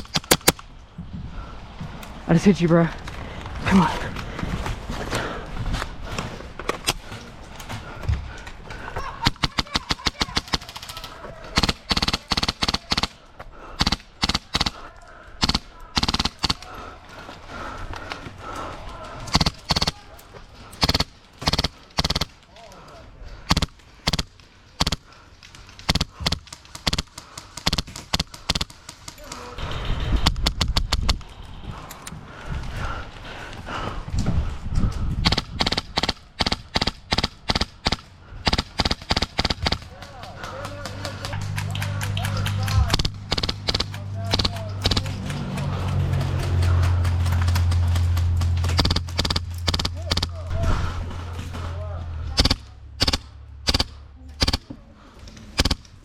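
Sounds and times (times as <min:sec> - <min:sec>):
airsoft guns firing bursts: 0:00.0 - 0:00.7, 0:09.0 - 0:17.0, 0:19.2 - 0:22.4, 0:23.4 - 0:25.1, 0:25.8 - 0:31.4, 0:35.2 - 0:50.5, 0:52.3 - 0:54.7, 0:55.5 - 0:56.0.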